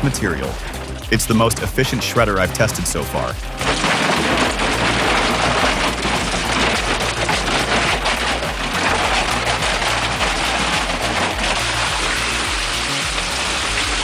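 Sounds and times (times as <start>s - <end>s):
industrial shredder tearing material: 3.5s - 14.0s.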